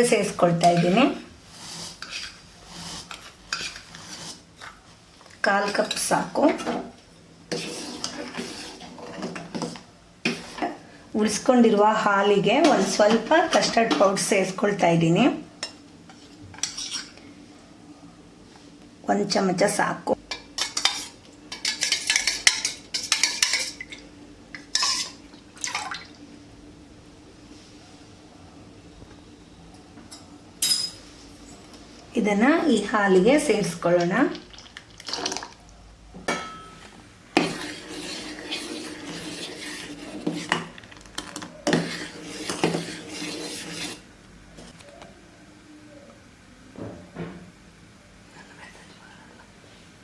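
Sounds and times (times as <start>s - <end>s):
spoon stirring and scraping pot: 0.0s - 14.9s, 15.6s - 17.3s, 20.2s - 25.2s, 36.3s - 44.8s
spoon clinking and scraping: 3.0s - 4.8s, 20.6s - 23.8s.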